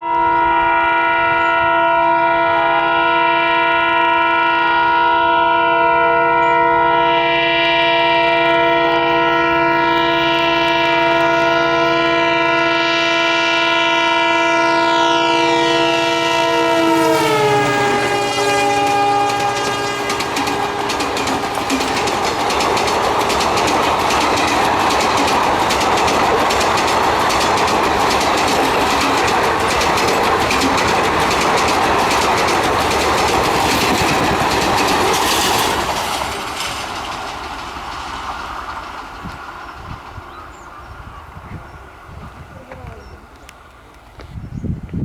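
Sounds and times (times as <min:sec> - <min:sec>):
locomotive horn blowing: 0:00.0 - 0:23.3
train wheels clattering on rails: 0:07.4 - 0:15.3, 0:16.8 - 0:44.1.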